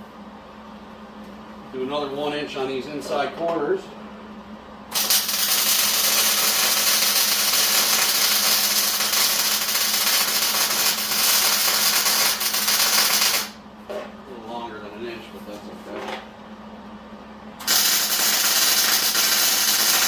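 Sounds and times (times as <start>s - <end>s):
welding arc crackling hiss: 4.9s - 13.6s, 17.6s - 20.0s.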